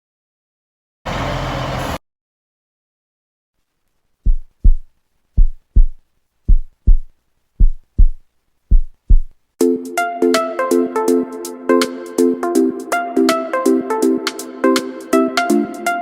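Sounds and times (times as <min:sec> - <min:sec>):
low heartbeat-style thumps: 0:04.2 - 0:09.4
electronic music with synth chords: 0:09.6 - 0:16.0.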